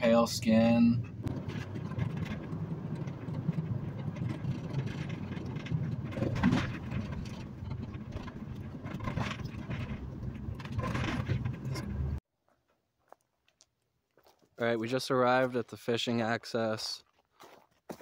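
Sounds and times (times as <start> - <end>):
road and engine rumble: 0.0 - 12.2
knocks and rattles: 1.0 - 12.2.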